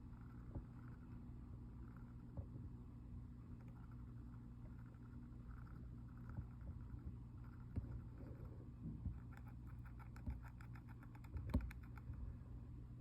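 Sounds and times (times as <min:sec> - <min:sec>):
steady low hum: 0:00.0 - 0:13.0
hamster grinding teeth: 0:03.5 - 0:08.5, 0:09.1 - 0:12.2.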